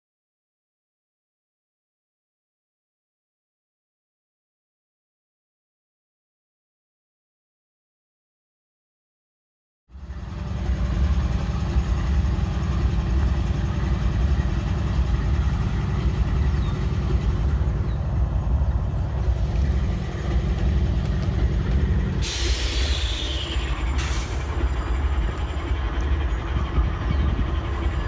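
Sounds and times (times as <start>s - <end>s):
locomotives idling: 10.2s - 28.0s
compressed air hiss: 22.2s - 24.6s.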